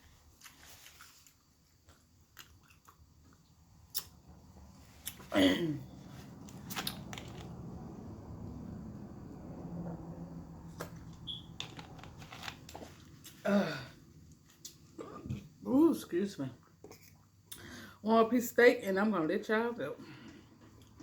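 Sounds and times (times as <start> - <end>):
person chewing food: 0.4 - 4.2
wet mouth clicks and crunches: 1.9 - 4.2.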